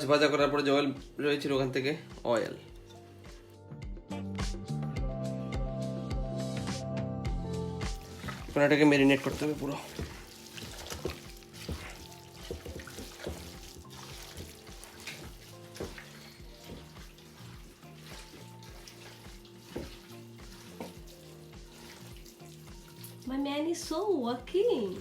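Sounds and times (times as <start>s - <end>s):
quiet background music: 0.0s - 25.0s
wet squelching of meat mixed: 7.8s - 25.0s.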